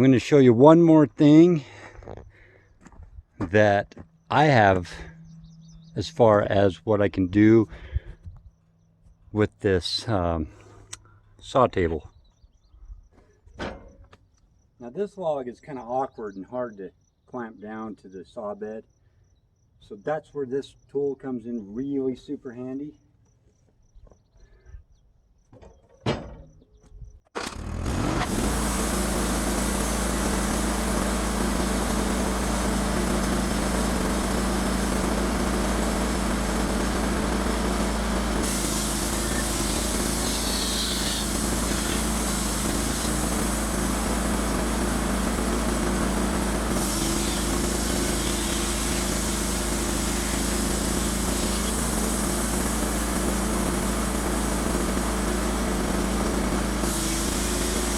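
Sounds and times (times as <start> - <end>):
sawmill motor running: 3.6 - 8.0, 27.4 - 57.9.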